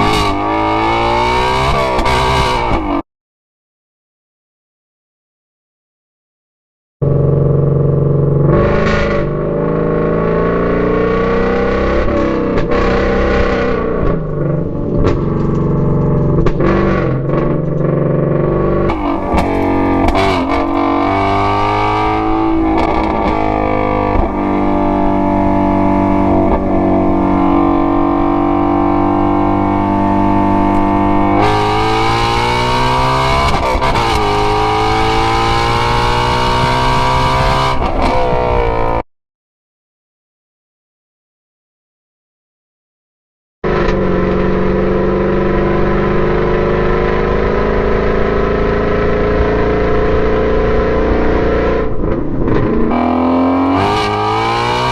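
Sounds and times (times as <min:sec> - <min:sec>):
car exhaust revving: 0:07.0 - 0:39.0, 0:43.6 - 0:54.9.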